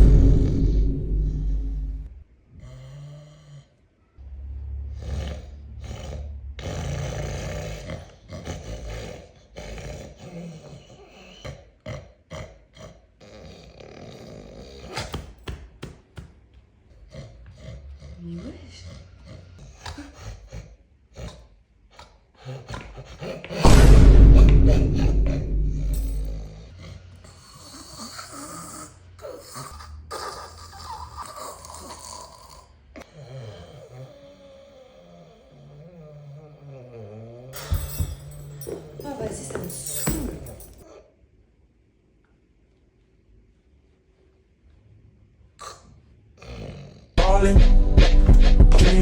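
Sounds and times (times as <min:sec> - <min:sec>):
person snoring and snorting: 0:05.0 - 0:15.1, 0:26.3 - 0:39.1, 0:45.6 - 0:47.4.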